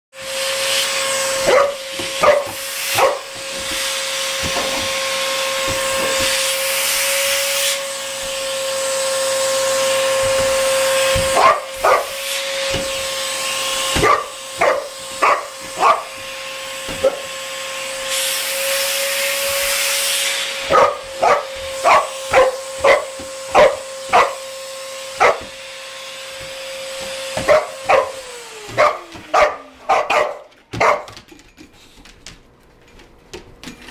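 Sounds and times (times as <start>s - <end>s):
vacuum cleaner whine: 0.2s - 32.2s
dog barking: 1.4s - 3.4s, 11.2s - 12.2s, 13.9s - 16.2s, 17.0s - 17.3s, 20.6s - 24.5s, 25.1s - 25.6s, 27.4s - 31.2s.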